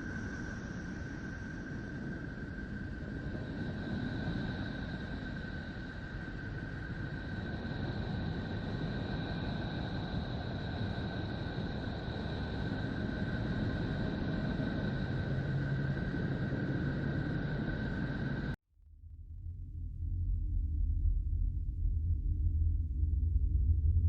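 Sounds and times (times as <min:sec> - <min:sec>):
faint low hum: 0:16.4 - 0:24.0.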